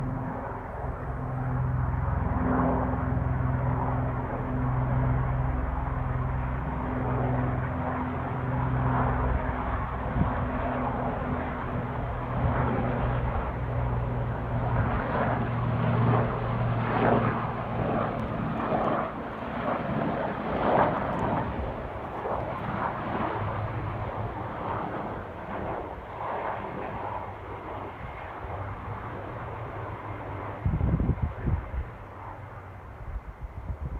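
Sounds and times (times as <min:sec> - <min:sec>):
helicopter engine and rotor drone: 0:00.0 - 0:33.9.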